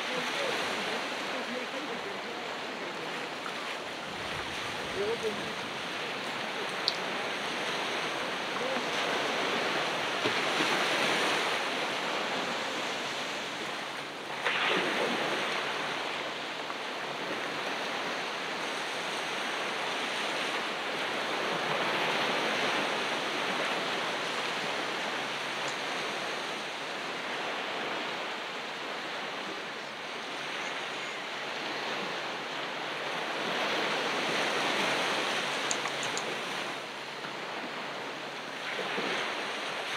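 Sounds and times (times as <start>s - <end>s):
wave breaking: 0.0s - 16.6s
ocean surf washing on beach: 0.0s - 39.9s.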